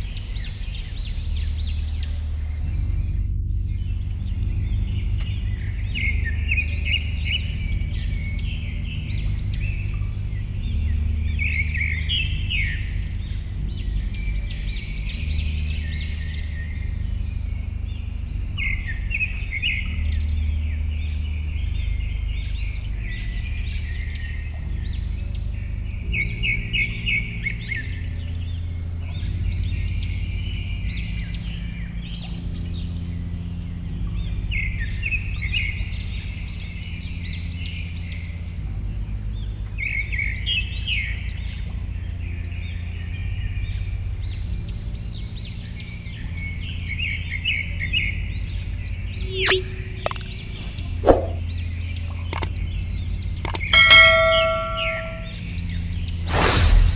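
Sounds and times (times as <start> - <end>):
songbirds chirping: 0.0 - 56.2
low rumble: 1.6 - 8.1
sharp clicks: 49.4 - 50.4, 52.3 - 52.6, 53.5 - 53.7.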